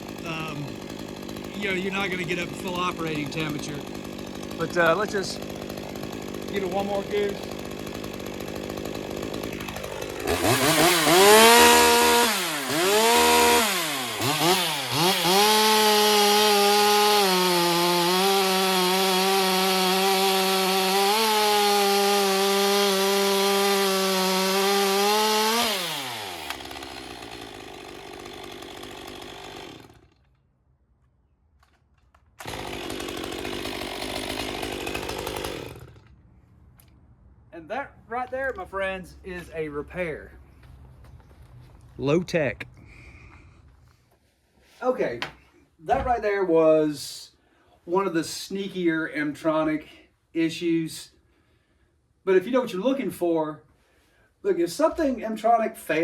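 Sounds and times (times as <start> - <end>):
chainsaw engine revving: 0.0 - 30.3, 32.4 - 36.1.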